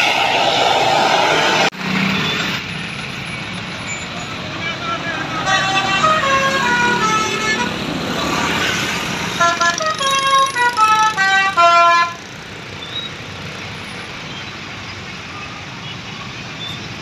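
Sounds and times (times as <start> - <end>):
musical air horn melody: 5.4 - 7.8, 9.4 - 12.2.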